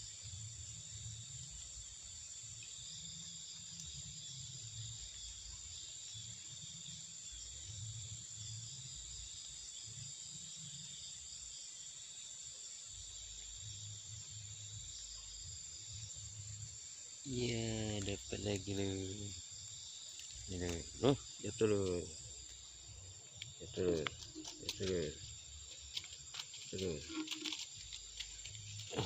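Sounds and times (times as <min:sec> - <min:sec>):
crickets trilling: 0:00.0 - 0:29.0.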